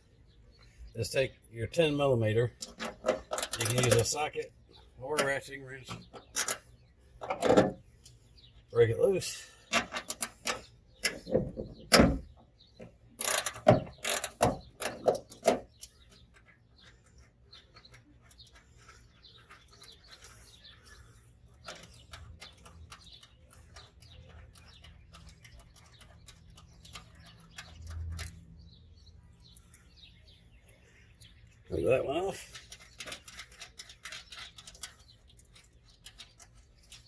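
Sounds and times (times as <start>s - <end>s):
ratchet wrench clicking: 13.2s - 15.1s.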